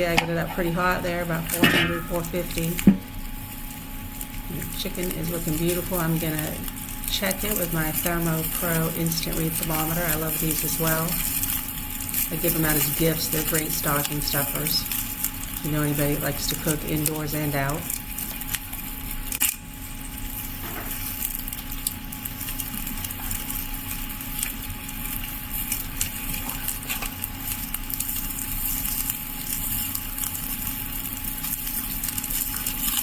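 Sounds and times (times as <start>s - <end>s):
fat crackling: 0.0s - 19.6s
meat sizzling over charcoal: 0.0s - 33.0s.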